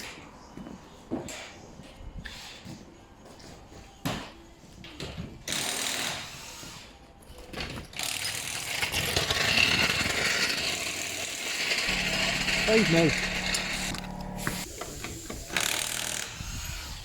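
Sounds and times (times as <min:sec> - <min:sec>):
power tools running: 0:11.6 - 0:16.9.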